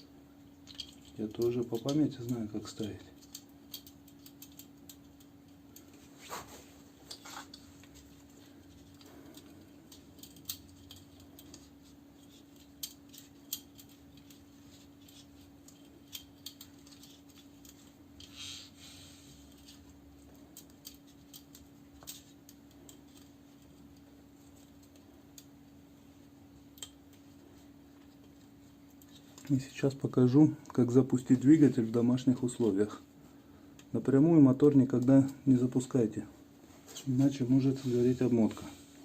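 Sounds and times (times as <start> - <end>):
small hard parts clicking: 0.0 - 6.0, 7.1 - 18.7, 19.4 - 25.5, 26.6 - 27.3
faint steady hum: 0.0 - 39.0
soft rustle: 5.8 - 29.9, 36.3 - 39.0.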